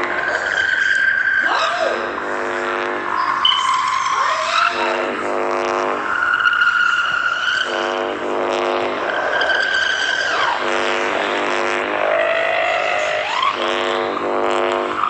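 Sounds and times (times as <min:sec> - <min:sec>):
buzzing electronic drone: 0:00.0 - 0:15.0
high whistling tones: 0:00.1 - 0:01.9, 0:03.1 - 0:04.9, 0:09.0 - 0:10.6.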